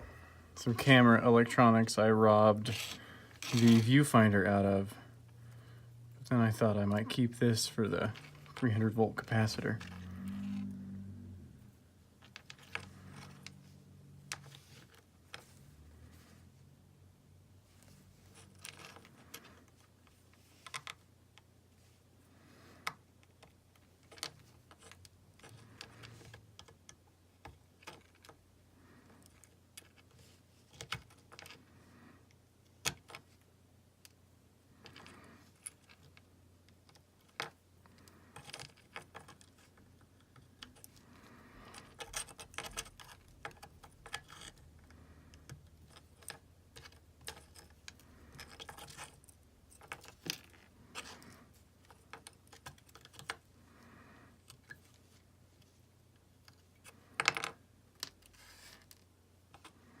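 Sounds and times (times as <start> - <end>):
faint low hum: 0.0 - 60.0
tools clicking and rattling: 41.7 - 51.2.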